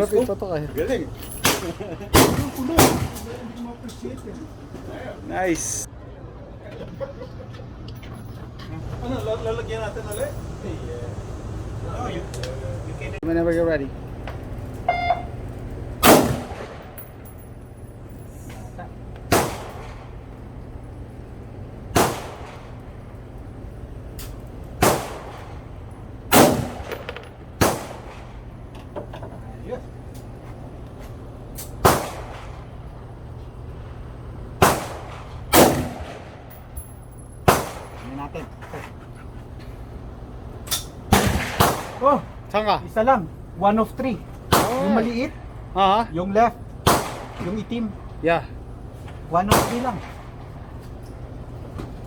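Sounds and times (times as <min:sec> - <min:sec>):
gunshots: 0:01.4 - 0:03.6, 0:16.0 - 0:17.0, 0:19.3 - 0:20.2, 0:21.9 - 0:22.8, 0:24.8 - 0:25.7, 0:26.3 - 0:28.5, 0:31.8 - 0:32.7, 0:34.6 - 0:36.5, 0:37.5 - 0:38.2, 0:41.1 - 0:42.3, 0:44.5 - 0:45.1, 0:46.8 - 0:47.8, 0:49.5 - 0:50.4
rifle shots: 0:01.4 - 0:03.6, 0:16.0 - 0:17.2, 0:19.3 - 0:20.4, 0:21.9 - 0:23.0, 0:24.8 - 0:28.5, 0:31.6 - 0:32.8, 0:34.6 - 0:36.7, 0:37.4 - 0:38.2, 0:41.1 - 0:42.4, 0:44.5 - 0:45.1, 0:46.8 - 0:47.8, 0:49.5 - 0:50.6.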